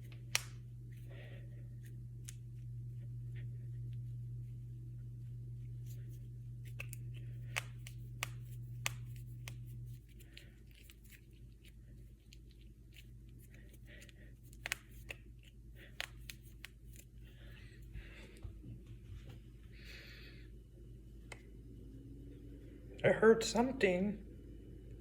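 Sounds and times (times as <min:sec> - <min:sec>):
knuckles cracking: 0:00.0 - 0:01.0, 0:05.9 - 0:17.1
low hum: 0:00.0 - 0:25.0.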